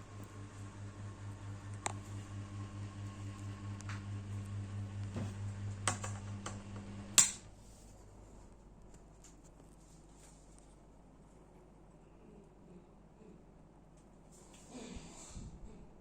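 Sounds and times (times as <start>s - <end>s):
ceiling fan motor hum: 0.0s - 16.0s
loud switch click: 7.1s - 7.4s.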